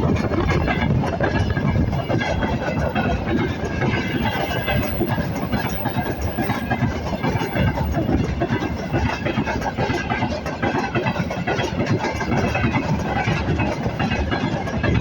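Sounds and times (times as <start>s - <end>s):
train wheels clattering over rails: 0.0s - 15.0s.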